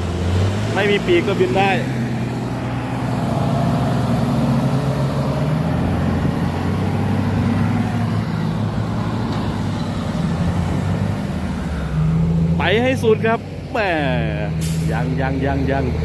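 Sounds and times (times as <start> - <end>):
diesel truck engine under load: 0.0 - 16.0.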